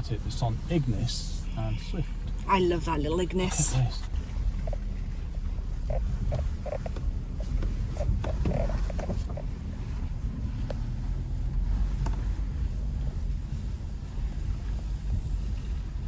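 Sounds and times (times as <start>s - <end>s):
car engine and tyres rumbling: 0.0s - 16.0s
car body creaks and knocks: 4.1s - 9.6s.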